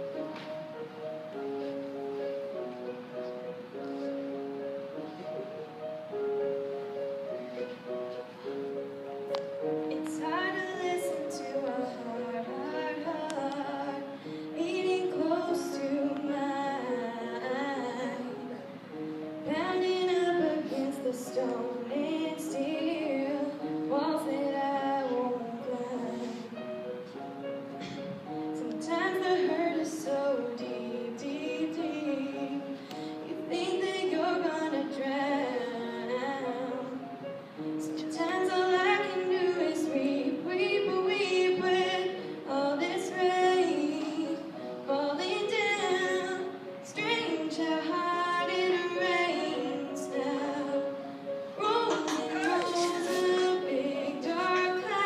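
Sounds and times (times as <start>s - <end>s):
girl singing a slow ballad: 9.8s - 27.0s, 27.8s - 55.0s.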